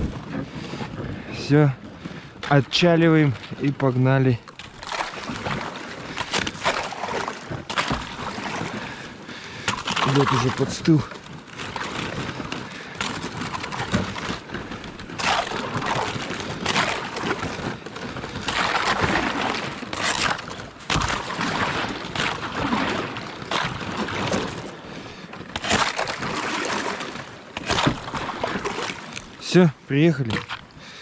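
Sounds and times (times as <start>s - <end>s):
water sloshing: 0.0s - 31.0s
sharp ice cracks: 4.5s - 5.6s, 6.2s - 8.4s, 9.7s - 11.0s, 15.1s - 17.6s, 18.4s - 21.6s, 25.5s - 27.0s, 27.6s - 29.4s
thin ice crunching and breaking: 6.2s - 8.4s, 15.2s - 17.5s, 18.4s - 21.4s, 25.5s - 27.0s, 27.6s - 29.2s.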